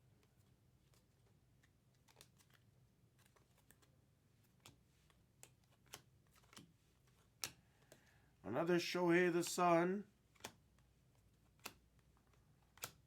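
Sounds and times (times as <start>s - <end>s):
trading cards being flipped: 0.2s - 8.1s, 10.3s - 13.0s.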